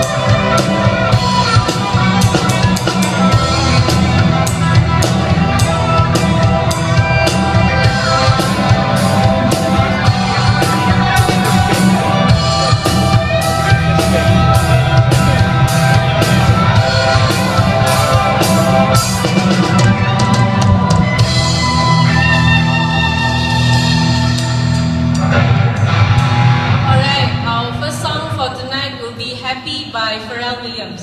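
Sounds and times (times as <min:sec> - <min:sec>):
steady drumbeat: 0:00.0 - 0:28.7
rock band playing: 0:00.0 - 0:29.3.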